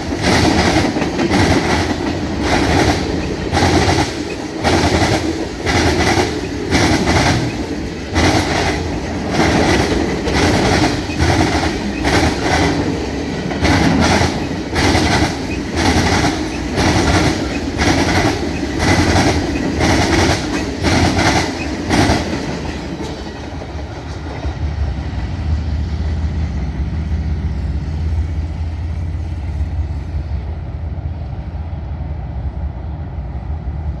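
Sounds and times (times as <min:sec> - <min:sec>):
train wheels clattering: 0:00.0 - 0:25.6.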